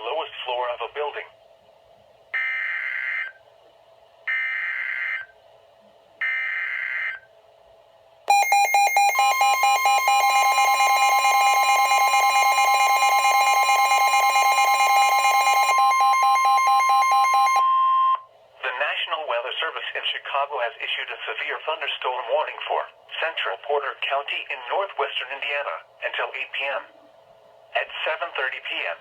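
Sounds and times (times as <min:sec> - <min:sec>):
steady warning alarm tone: 0:04.3 - 0:05.3, 0:06.2 - 0:07.2, 0:08.3 - 0:18.3
rapid pulsing alarm beep: 0:08.3 - 0:18.2.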